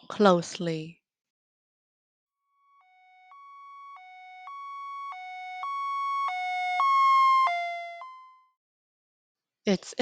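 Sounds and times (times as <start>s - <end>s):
ambulance two-tone siren: 2.5s - 8.6s.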